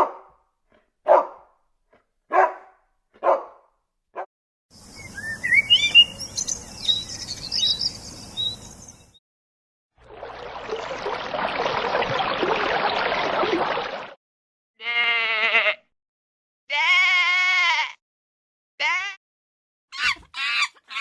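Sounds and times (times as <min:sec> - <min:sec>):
dog barking: 0:00.0 - 0:00.4, 0:01.0 - 0:01.5, 0:02.3 - 0:04.3
small birds chirping: 0:04.8 - 0:09.2.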